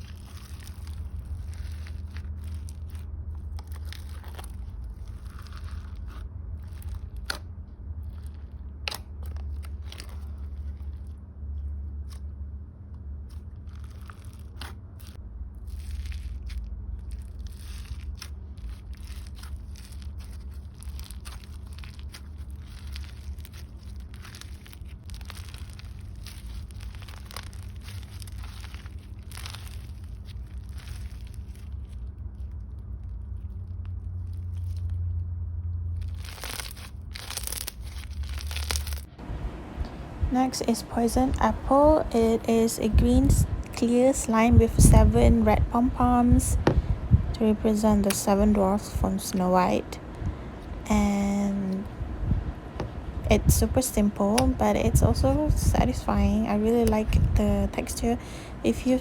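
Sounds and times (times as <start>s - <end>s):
crunchy slime squished by hand: 0.0s - 40.3s
steady low hum: 0.0s - 59.0s.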